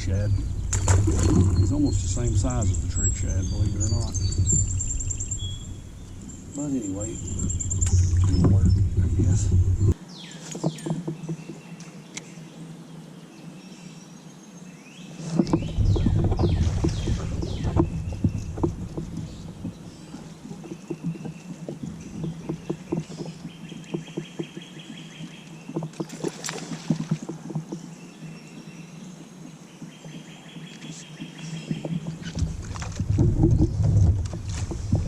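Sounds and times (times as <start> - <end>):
kayak and tackle knocking: 0.0 - 10.0, 15.3 - 28.0, 31.2 - 35.0
wind rumble on microphone: 0.0 - 10.0, 15.2 - 24.3, 31.6 - 35.0.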